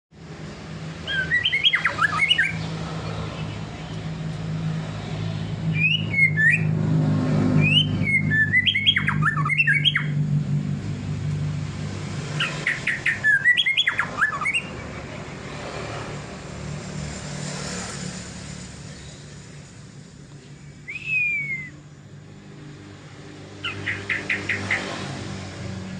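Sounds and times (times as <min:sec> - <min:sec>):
songbird whistling: 0:01.0 - 0:02.7, 0:05.7 - 0:06.7, 0:07.6 - 0:10.2, 0:12.4 - 0:14.7, 0:20.7 - 0:22.0, 0:23.6 - 0:24.9
low mechanical hum: 0:17.8 - 0:23.6.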